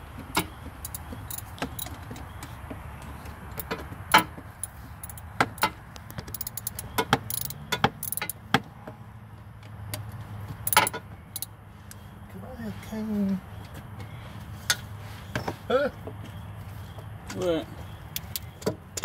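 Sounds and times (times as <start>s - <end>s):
hand tools clinking against metal: 0.3s - 2.0s, 3.5s - 8.4s, 10.6s - 11.5s.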